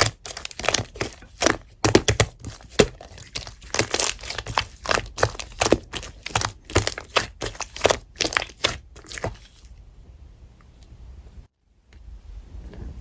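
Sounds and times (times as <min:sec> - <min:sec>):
slime squishing by hand: 0:00.0 - 0:09.8.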